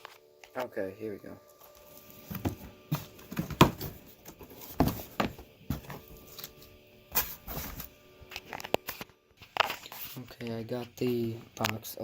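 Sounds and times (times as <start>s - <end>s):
cardboard box being opened: 2.3s - 6.3s.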